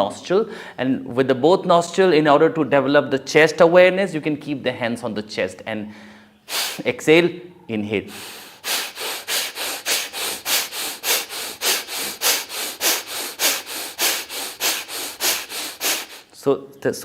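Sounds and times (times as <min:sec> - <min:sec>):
rapid forceful nasal breathing: 0:06.0 - 0:06.9, 0:08.1 - 0:16.4.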